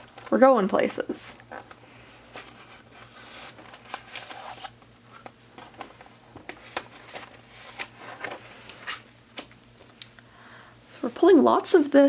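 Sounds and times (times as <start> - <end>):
paper cards and plastic rustling: 0.0 - 9.5.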